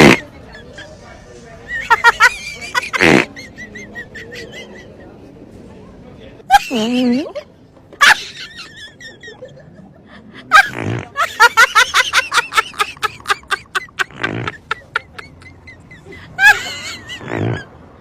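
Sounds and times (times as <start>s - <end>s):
low fart noises: 0.0s - 0.2s, 2.9s - 3.3s, 10.6s - 11.2s, 14.1s - 14.6s, 17.2s - 17.7s
rapid laughter: 1.7s - 5.1s, 8.0s - 17.7s.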